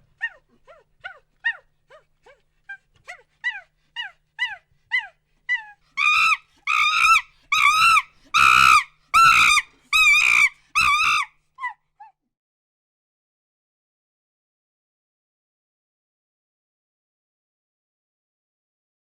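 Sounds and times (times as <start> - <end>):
monkey hooting and screaming: 3.1 - 11.8.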